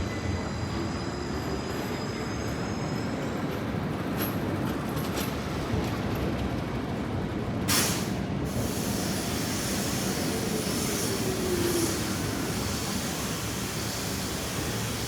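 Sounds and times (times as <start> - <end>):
tram rumbling on rails: 0.0 - 15.0
burst of air hiss: 7.7 - 15.0.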